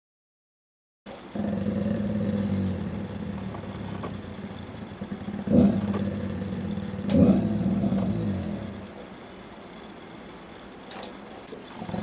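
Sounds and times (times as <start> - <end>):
dog growling: 1.3 - 9.0, 11.7 - 12.0.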